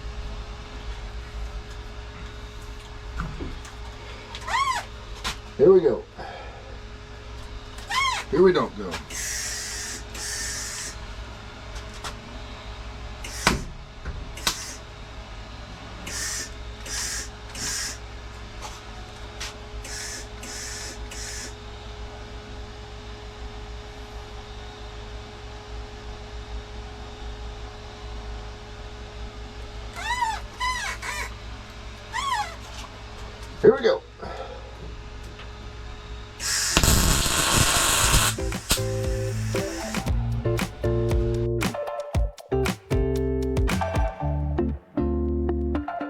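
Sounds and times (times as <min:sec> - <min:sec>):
welder hissing bursts: 0:09.1 - 0:11.0, 0:13.2 - 0:13.6, 0:14.4 - 0:14.8, 0:16.1 - 0:18.0, 0:19.8 - 0:21.6, 0:36.4 - 0:40.0.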